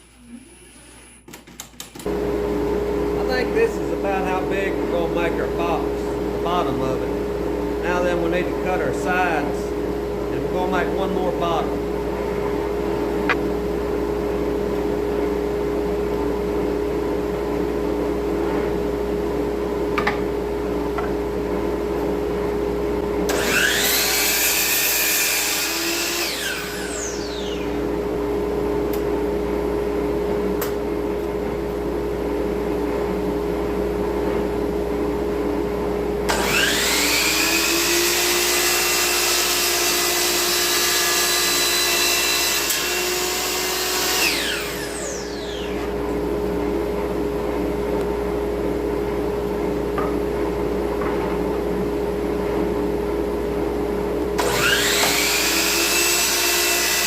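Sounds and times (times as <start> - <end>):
steady motor hum: 2.0 - 57.0
power saw whining: 23.3 - 27.9, 36.3 - 46.0, 54.4 - 57.0.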